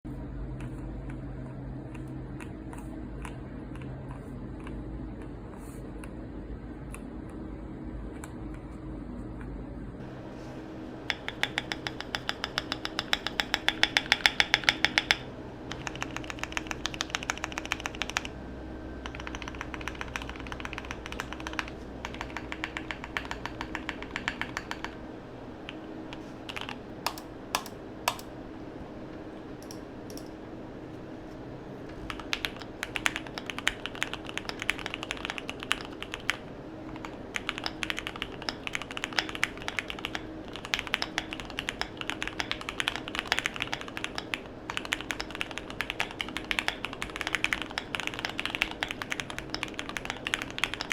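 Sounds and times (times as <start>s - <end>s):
typing on mechanical keyboard: 11.0s - 18.4s, 19.0s - 25.0s, 25.6s - 28.3s, 29.6s - 30.3s, 32.0s - 50.9s.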